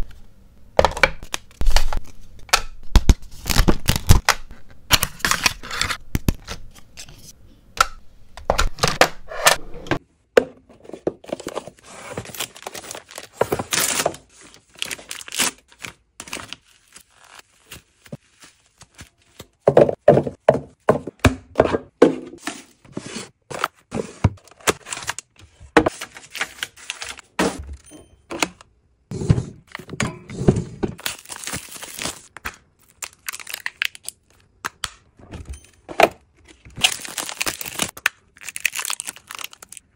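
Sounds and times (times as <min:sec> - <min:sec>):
items knocking and clicking: 0:00.8 - 0:03.0, 0:07.8 - 0:12.4, 0:19.4 - 0:22.6
packaging crinkling: 0:12.0 - 0:19.5, 0:31.0 - 0:34.5, 0:36.8 - 0:39.9.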